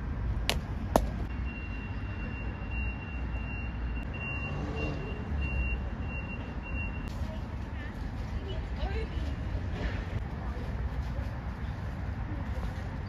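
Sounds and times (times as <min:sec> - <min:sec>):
vehicle reversing beeps: 0:01.3 - 0:07.1.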